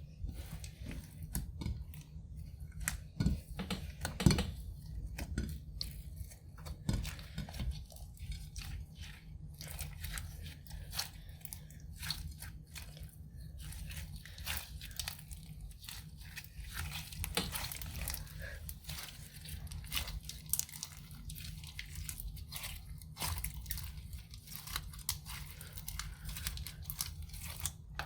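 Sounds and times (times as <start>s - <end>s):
slime squishing and stretching: 0.0s - 28.0s
sticky crackles and pops: 13.8s - 28.0s.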